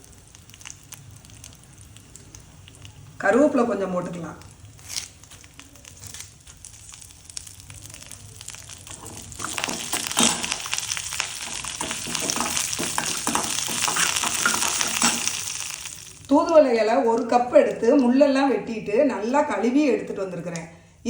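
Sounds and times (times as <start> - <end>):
food sizzling in oil: 0.0 - 19.6
spoon stirring: 8.9 - 15.9.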